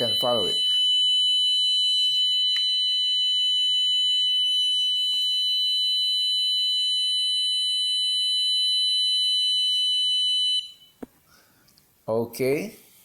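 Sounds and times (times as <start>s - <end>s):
high-pitched alarm tone: 0.0s - 10.9s.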